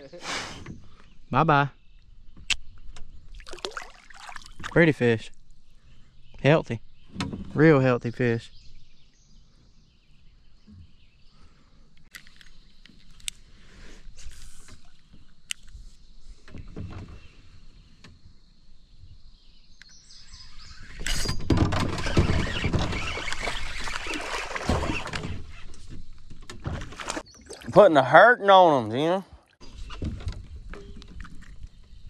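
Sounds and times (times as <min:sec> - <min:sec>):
soft water movement: 0:03.2 - 0:06.1
splashing water from paddling: 0:03.3 - 0:04.8, 0:21.9 - 0:25.7, 0:26.6 - 0:28.0.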